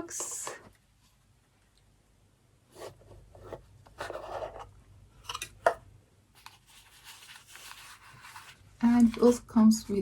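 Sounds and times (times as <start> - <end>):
cardboard box and paper rustling: 6.4 - 9.4.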